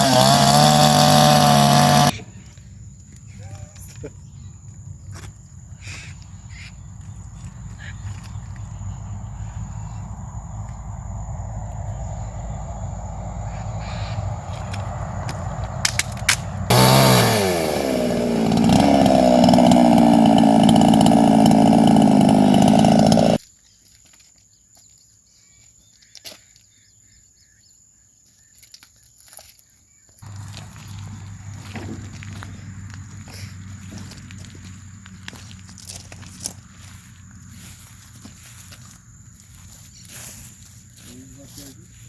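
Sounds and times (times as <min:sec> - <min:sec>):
small petrol engine running: 0:00.0 - 0:02.1, 0:16.7 - 0:23.4, 0:30.2 - 0:38.2.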